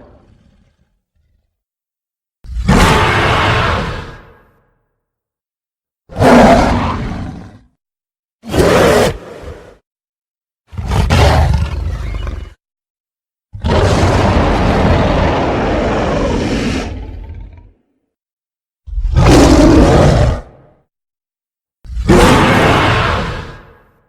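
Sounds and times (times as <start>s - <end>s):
monster roars: 2.5s - 4.4s, 6.1s - 7.7s, 13.6s - 17.8s, 18.9s - 20.7s, 21.9s - 23.9s.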